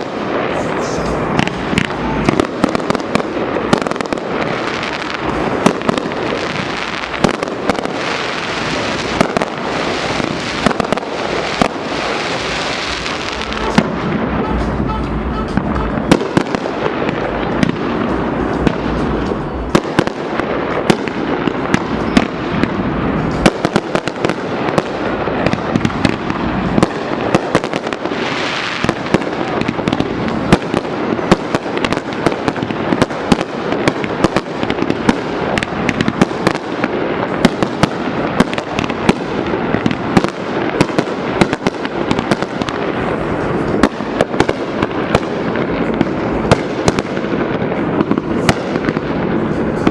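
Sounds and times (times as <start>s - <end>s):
fireworks hissing burst: 0.0s - 15.2s
fireworks bangs and pops: 0.0s - 49.9s
fireworks crackle: 0.0s - 49.9s.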